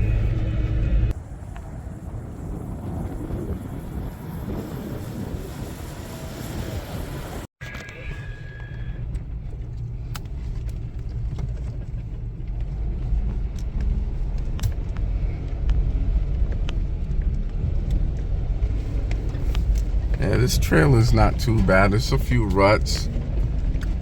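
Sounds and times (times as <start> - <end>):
engine and drivetrain rumble: 0.0 - 24.0.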